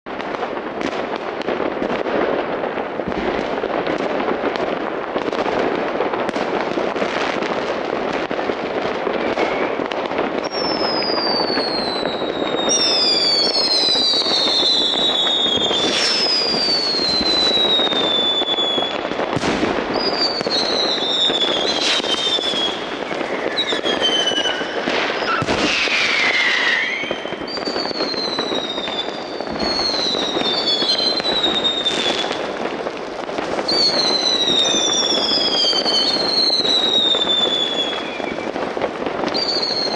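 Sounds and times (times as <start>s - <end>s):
firecrackers crackling: 0.1s - 39.9s
firework bangs: 0.1s - 39.9s
whistling fireworks: 0.1s - 39.9s.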